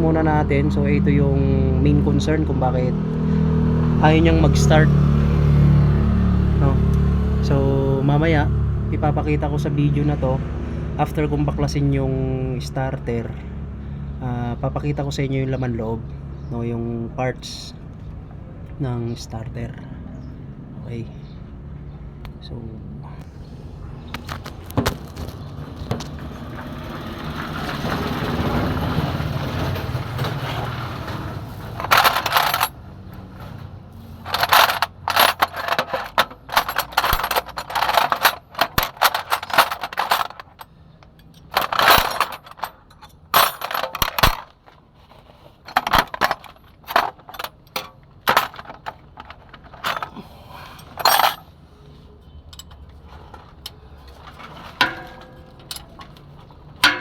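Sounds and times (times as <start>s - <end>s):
hand tools clinking on metal: 31.7s - 32.8s, 33.4s - 44.6s, 45.7s - 51.5s, 52.5s - 57.0s.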